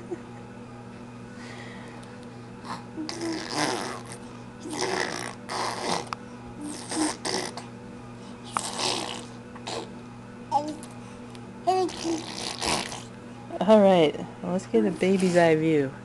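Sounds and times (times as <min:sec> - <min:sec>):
baby blowing raspberries: 0:02.7 - 0:07.7, 0:08.4 - 0:09.9, 0:11.7 - 0:13.2.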